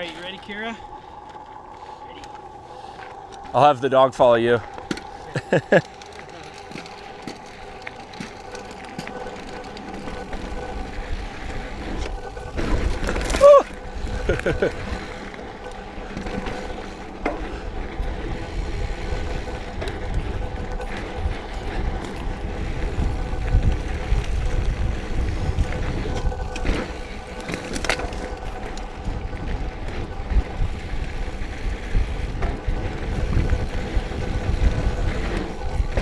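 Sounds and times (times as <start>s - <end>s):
bike tyre rumble: 0.0s - 36.0s
bike frame rattle: 4.2s - 36.0s
wind buffeting microphone: 7.6s - 36.0s.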